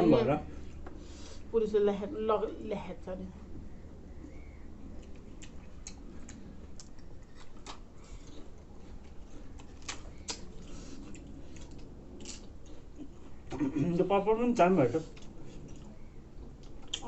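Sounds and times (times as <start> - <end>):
crisp food crunching: 5.0 - 13.4.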